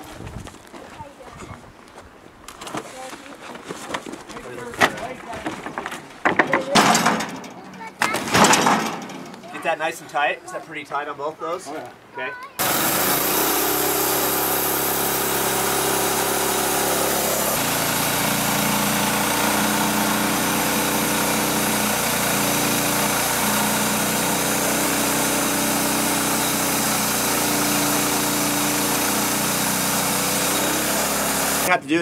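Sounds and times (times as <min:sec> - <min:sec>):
sawmill engine cutting a log: 0:12.6 - 0:31.7.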